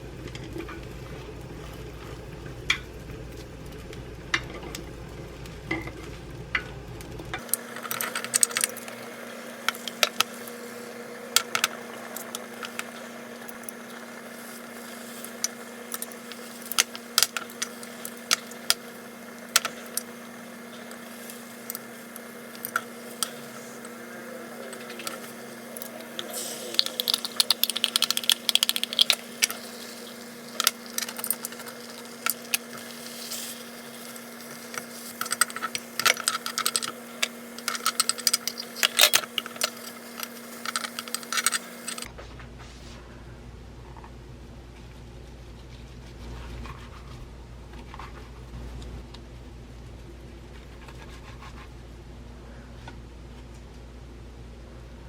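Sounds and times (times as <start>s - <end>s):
steady low hum: 0.0s - 55.0s.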